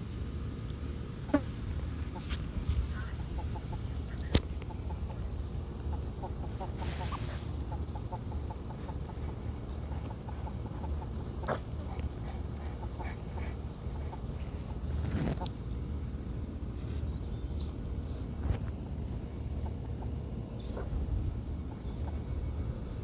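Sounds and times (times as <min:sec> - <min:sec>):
fowl soft repeated calls: 0:05.8 - 0:11.6.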